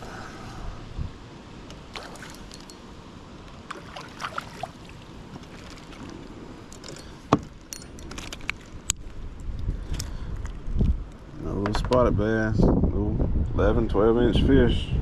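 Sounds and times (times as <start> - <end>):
creek rushing: 0.0 - 6.8
wind: 0.0 - 15.0
fishing tackle clicks: 6.7 - 10.9.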